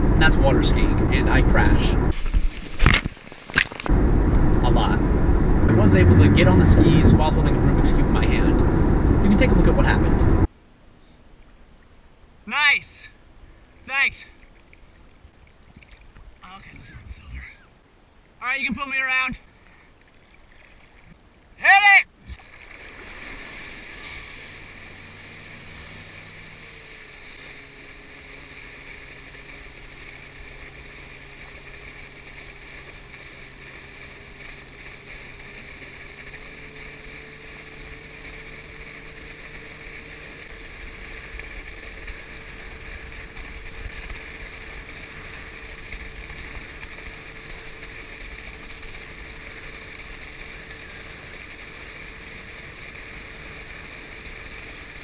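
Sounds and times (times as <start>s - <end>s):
motorboat engine running: 0.0s - 10.5s, 22.4s - 55.0s
wind: 0.0s - 55.0s
rushing water: 11.4s - 55.0s.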